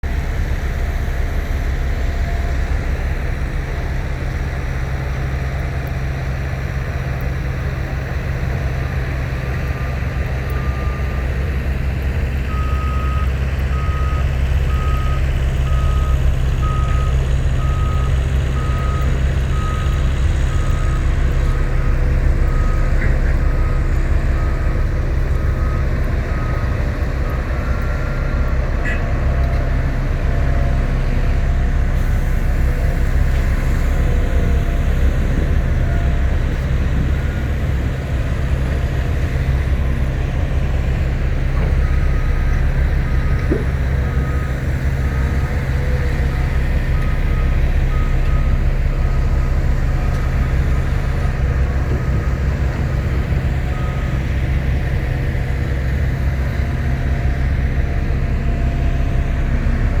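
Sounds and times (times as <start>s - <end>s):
diesel engine low rumble: 0.0s - 60.0s
reversing alarm beeps: 0.1s - 60.0s.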